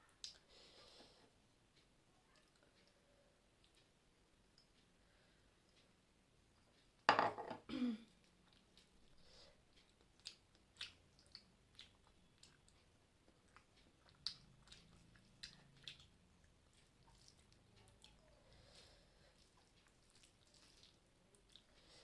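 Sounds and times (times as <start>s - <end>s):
person chewing with mouth clicks: 8.2s - 18.3s, 19.3s - 22.0s.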